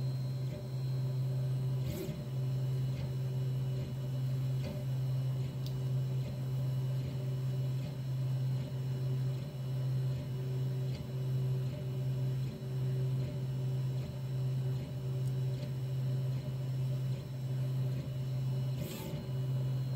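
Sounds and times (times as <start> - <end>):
printer motor hum: 0.0 - 19.9.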